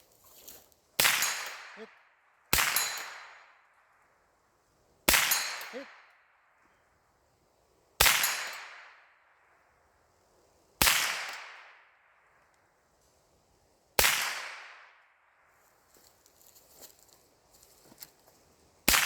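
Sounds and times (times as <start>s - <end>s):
rifle shots echoing: 1.0s - 3.6s, 5.1s - 6.1s, 8.0s - 9.1s, 10.8s - 11.8s, 14.0s - 14.9s.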